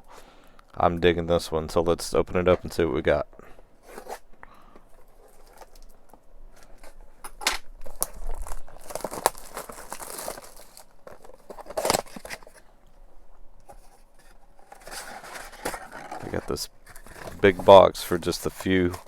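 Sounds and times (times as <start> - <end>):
packaging crinkling and tearing: 5.1 - 12.7, 14.6 - 19.0.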